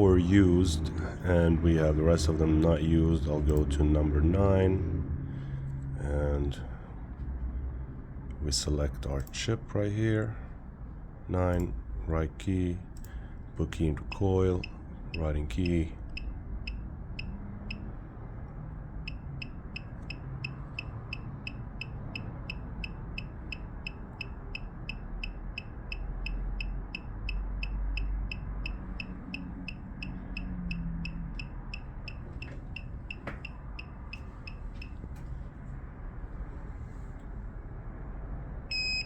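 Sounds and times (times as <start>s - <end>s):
short high beeps: 38.7s - 39.0s.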